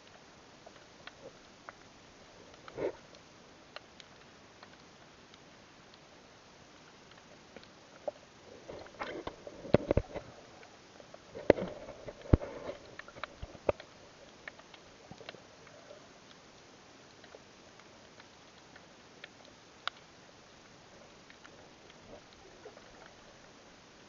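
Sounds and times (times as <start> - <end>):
muffled rustling underwater: 0.0 - 24.0
sharp clicks underwater: 2.5 - 6.1, 6.7 - 16.5, 17.1 - 23.4.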